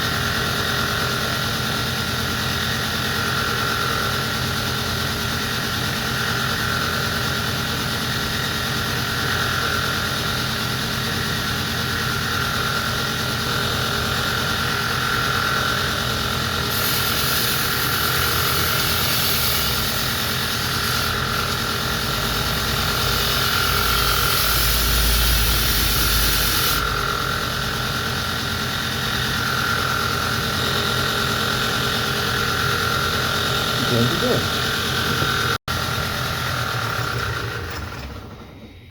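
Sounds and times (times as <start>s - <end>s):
belt grinder motor running: 0.0s - 38.8s
blade grinding with high hiss: 14.6s - 27.5s.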